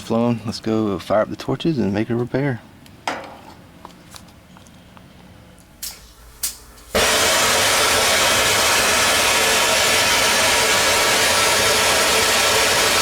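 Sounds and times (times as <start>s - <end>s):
torch rushing hiss: 5.8s - 13.0s.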